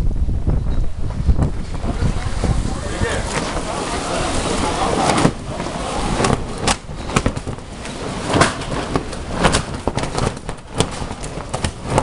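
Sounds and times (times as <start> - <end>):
rush of storm wind: 0.0 - 12.0
structures snapping and banging: 3.2 - 12.0.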